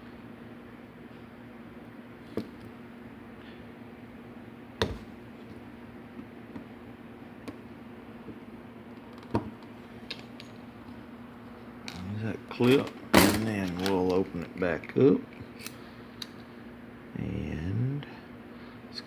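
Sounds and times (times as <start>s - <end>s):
steady low hum: 0.0s - 19.0s.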